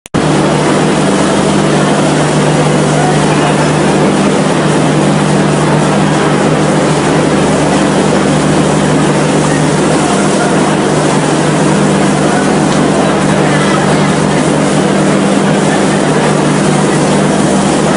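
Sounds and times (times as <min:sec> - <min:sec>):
moving train rumble: 0:00.2 - 0:17.9.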